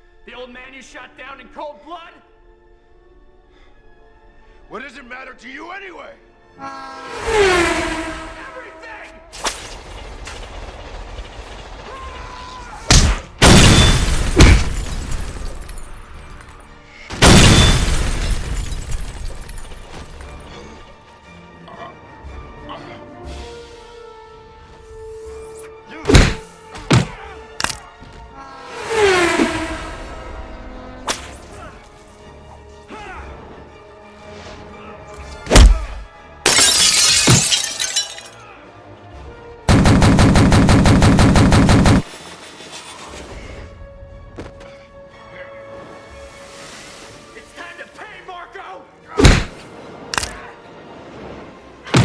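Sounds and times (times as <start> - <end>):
quiet background music: 0.0 - 7.0
automatic gunfire: 39.7 - 42.2.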